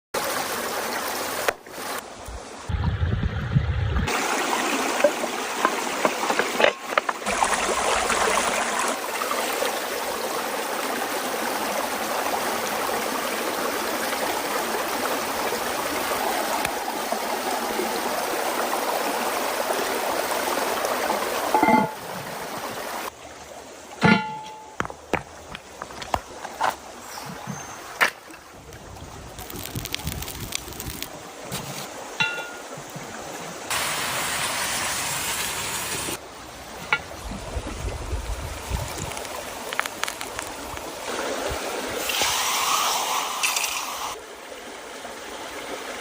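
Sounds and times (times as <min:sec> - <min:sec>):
stream rushing: 0:00.2 - 0:02.8, 0:04.0 - 0:46.0
low rumble: 0:02.7 - 0:04.1.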